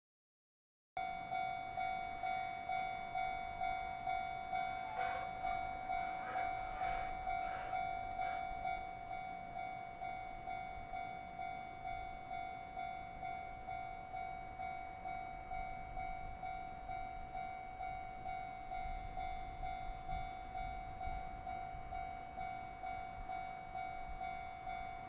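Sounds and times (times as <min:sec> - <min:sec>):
level crossing bell dinging: 0:01.0 - 0:09.9.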